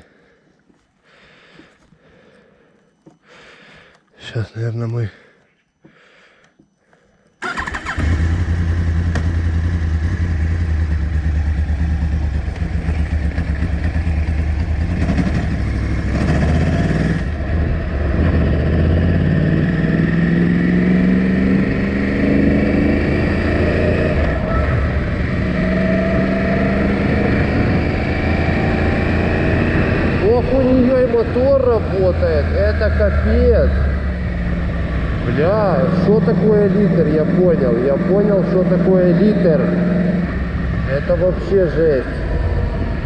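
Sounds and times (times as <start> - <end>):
motorcycle engine running: 7.5 - 19.8.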